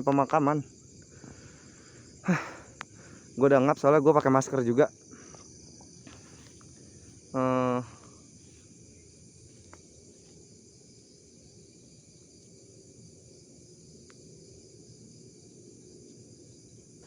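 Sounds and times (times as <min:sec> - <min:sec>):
crickets chirping: 0:00.0 - 0:17.0
faint ticks: 0:02.7 - 0:03.0, 0:09.5 - 0:10.4, 0:14.0 - 0:14.3.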